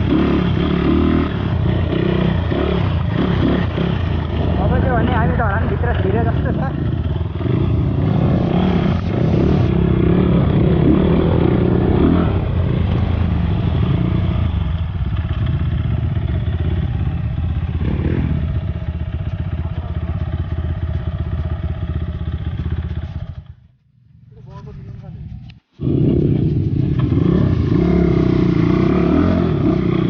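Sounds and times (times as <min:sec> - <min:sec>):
motorcycle engine running: 0:00.0 - 0:30.0.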